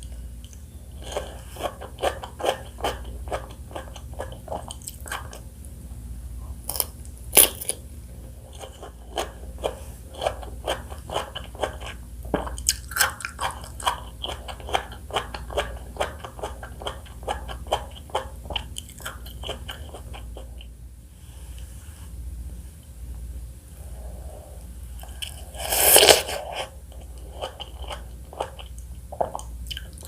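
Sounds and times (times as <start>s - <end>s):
wet crunchy chewing: 1.0s - 5.4s, 8.5s - 20.7s, 25.0s - 30.0s.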